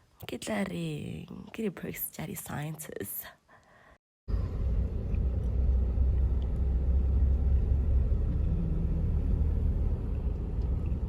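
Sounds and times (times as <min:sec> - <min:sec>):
low rumble: 0:04.3 - 0:11.0.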